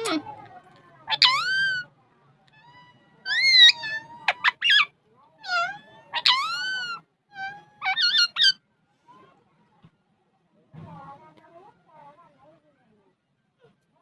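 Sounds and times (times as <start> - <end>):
parrot sharp chirps: 1.1 - 1.9, 2.8 - 8.6
parrot shrill calls: 1.1 - 1.9, 2.6 - 8.6
parrot warbling call: 1.1 - 1.9, 2.6 - 8.6.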